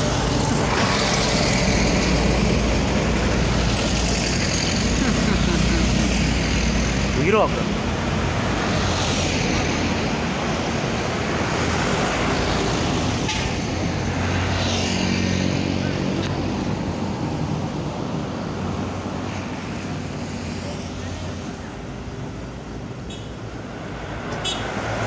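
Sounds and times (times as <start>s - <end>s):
bus diesel engine running: 0.0s - 8.4s
road traffic noise: 0.0s - 25.0s.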